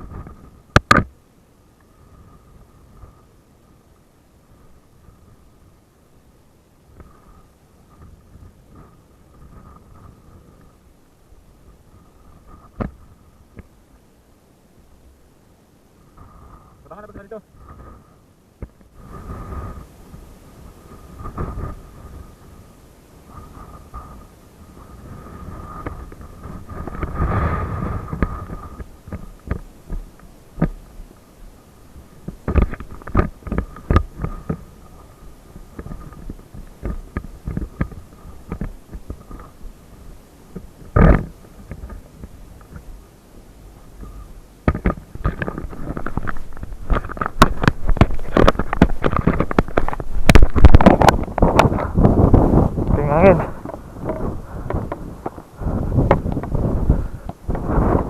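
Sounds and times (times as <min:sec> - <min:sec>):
faint steady whine: 0:00.0 - 0:58.0
wind buffeting microphone: 0:16.0 - 0:58.0.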